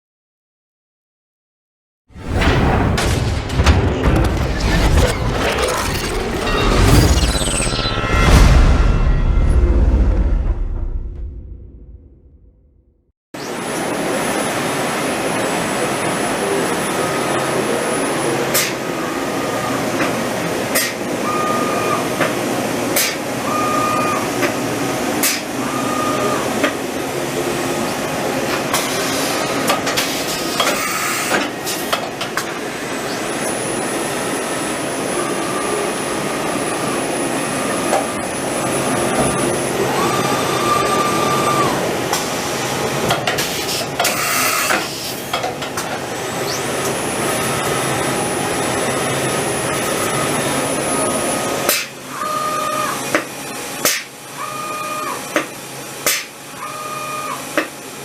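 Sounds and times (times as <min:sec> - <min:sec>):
high machine whine: 0:02.2 - 0:12.5.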